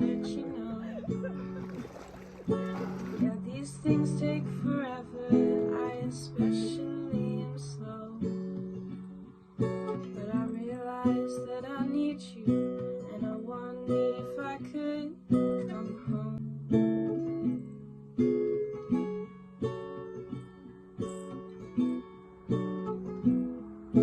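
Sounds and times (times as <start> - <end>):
acoustic guitar strumming chords: 0.0 - 14.1.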